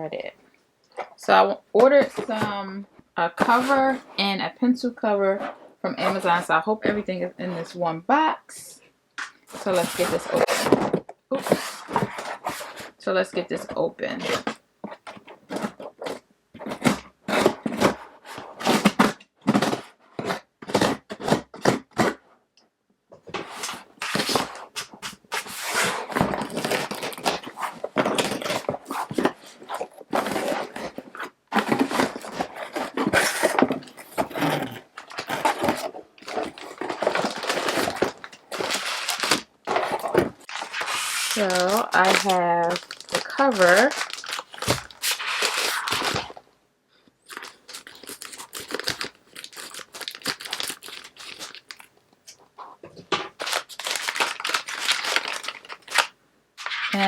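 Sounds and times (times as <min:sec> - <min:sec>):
box scraping strokes: 0:03.5 - 0:04.0, 0:09.5 - 0:10.8, 0:11.4 - 0:13.0, 0:23.4 - 0:42.3
packaging rustling and crinkling: 0:14.2 - 0:22.2, 0:23.3 - 0:46.4, 0:47.2 - 0:52.4, 0:53.1 - 0:57.0.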